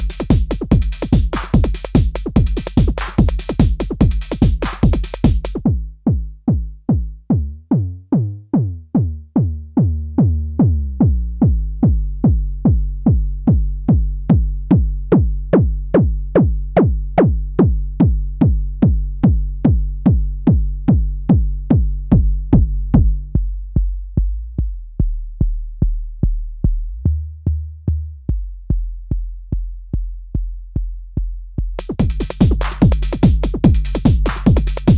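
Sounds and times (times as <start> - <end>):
bright noisy percussion: 0.0 - 5.6, 31.8 - 34.9
drum machine kick drum: 0.0 - 23.4, 31.8 - 34.9.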